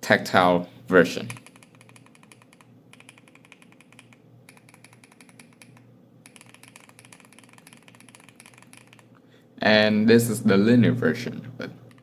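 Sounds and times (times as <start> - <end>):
fast typing on mechanical keyboard: 1.3 - 9.1.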